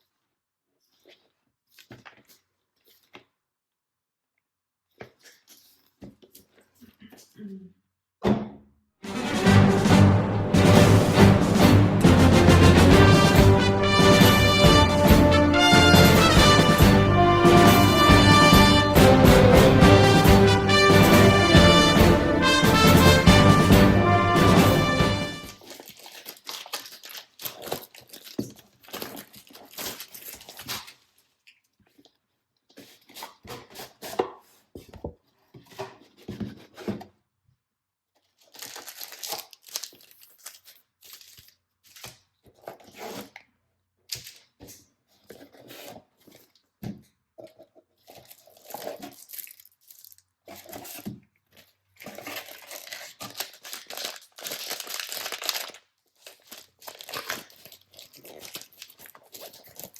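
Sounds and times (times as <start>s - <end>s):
packaging torn and crinkled: 25.5s - 31.7s, 38.2s - 43.3s, 48.1s - 51.0s, 52.0s - 59.9s.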